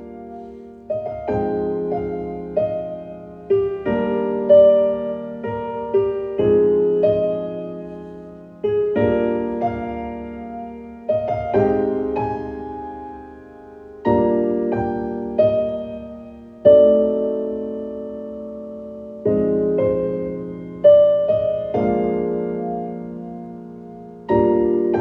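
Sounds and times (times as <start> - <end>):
soft piano chords: 0.0 - 25.0.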